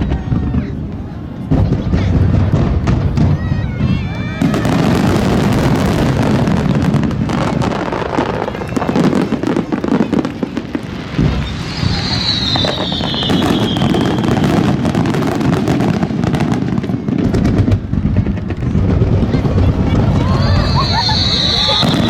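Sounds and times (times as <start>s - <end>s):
fireworks bursting and crackling: 0.0s - 22.0s
firework whistle gliding down: 11.0s - 15.4s, 20.0s - 22.0s.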